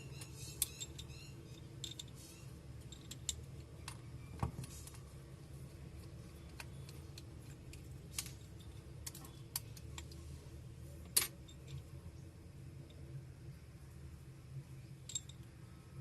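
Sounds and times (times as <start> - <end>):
faint low hum: 0.0 - 16.0.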